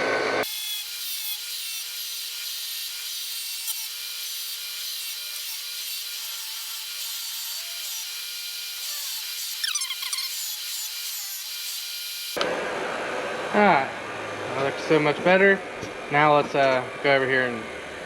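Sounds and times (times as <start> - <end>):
falling squeal: 9.6 - 10.3.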